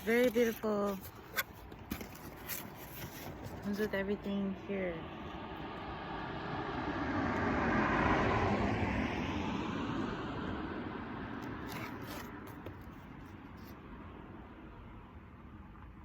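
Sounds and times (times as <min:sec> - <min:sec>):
vehicle passing by: 0:04.6 - 0:12.5.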